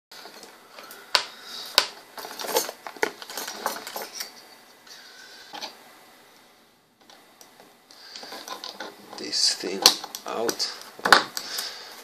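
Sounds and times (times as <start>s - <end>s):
small hard objects clicking and rattling: 8.2s - 10.3s.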